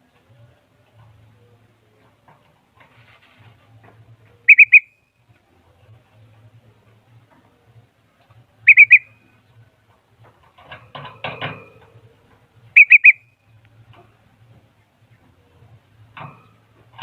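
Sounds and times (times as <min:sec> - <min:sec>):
songbird whistled calls: 0:04.4 - 0:05.1, 0:08.6 - 0:09.3, 0:12.8 - 0:13.4.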